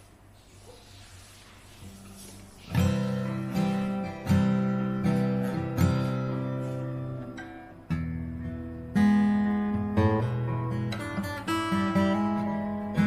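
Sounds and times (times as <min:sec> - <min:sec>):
acoustic guitar strumming chords: 0:01.8 - 0:13.0.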